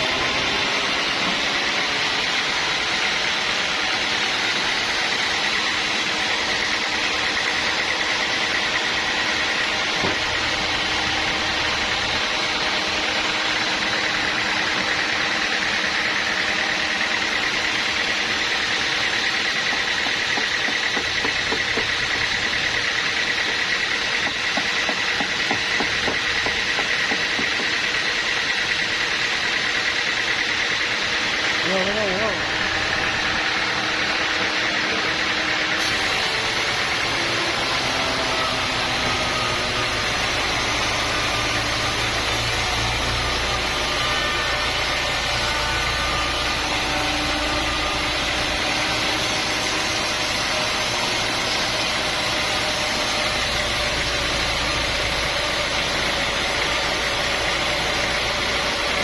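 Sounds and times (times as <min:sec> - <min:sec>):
high saw whine: 0:00.0 - 0:59.0
sawmill machinery running: 0:00.0 - 0:59.0.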